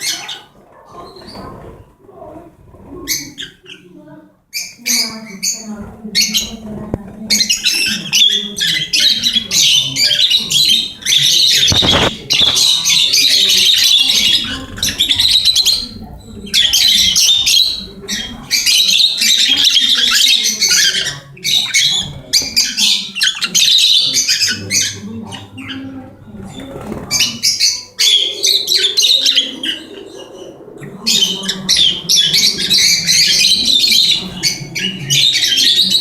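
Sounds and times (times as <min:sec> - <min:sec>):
lovebird chirps and squawks: 0:07.3 - 0:25.8.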